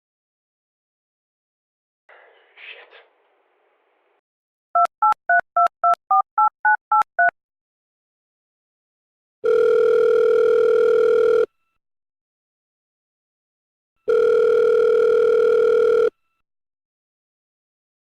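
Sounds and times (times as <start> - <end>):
telephone keypad beeps: 4.8 - 7.3, 9.4 - 11.5, 14.1 - 16.1
telephone ringing tone: 9.4 - 11.6, 14.0 - 16.2.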